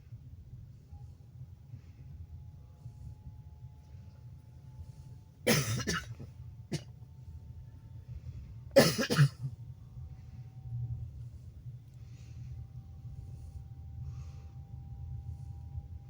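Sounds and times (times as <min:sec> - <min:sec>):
train rumble: 0:00.0 - 0:16.0
person coughing: 0:05.5 - 0:06.9, 0:08.8 - 0:09.5.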